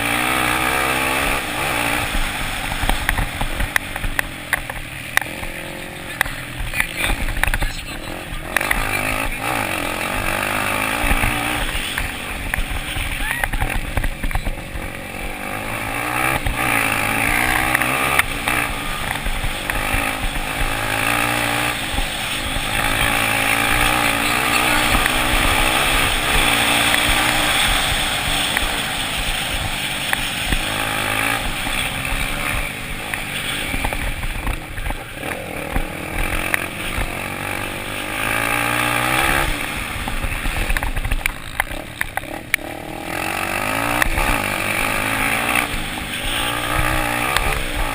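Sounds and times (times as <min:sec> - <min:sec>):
dirt bike engines revving: 0:00.0 - 0:47.9.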